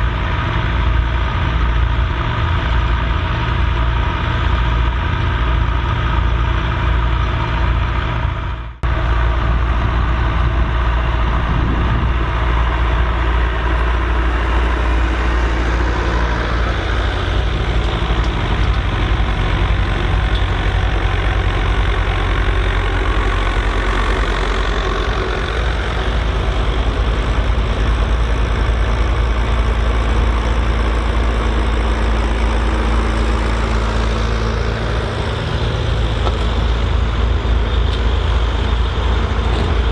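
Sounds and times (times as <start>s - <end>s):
diesel tractor engine running: 0.0s - 39.9s.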